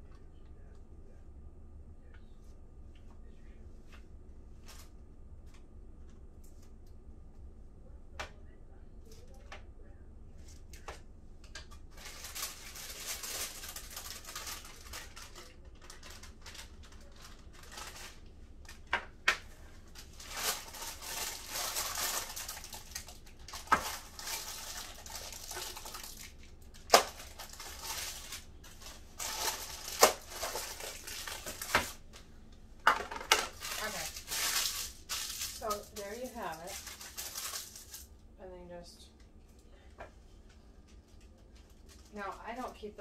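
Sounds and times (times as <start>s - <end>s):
parchment paper rustling: 10.4s - 32.3s, 32.9s - 38.1s, 40.1s - 43.0s.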